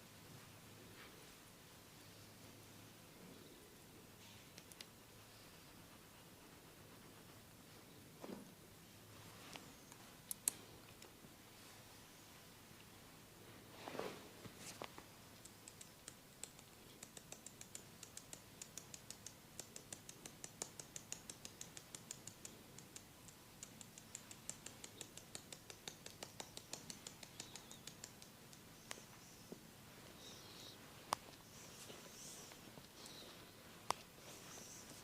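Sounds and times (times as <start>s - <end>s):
soft rustle: 0.1s - 17.0s, 24.2s - 35.0s
light crisp clicks: 4.5s - 5.0s, 9.5s - 11.2s, 14.8s - 35.0s.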